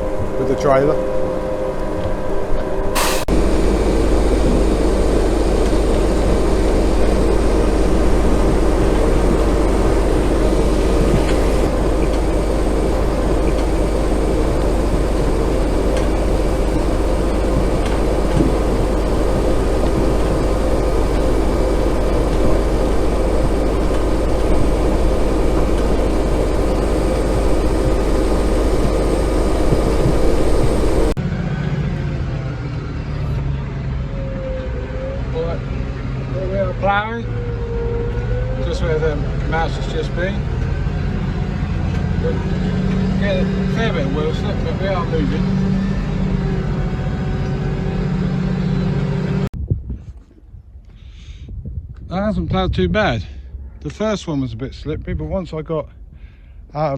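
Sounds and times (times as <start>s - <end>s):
heavy diesel machinery rumbling: 0.0s - 31.2s.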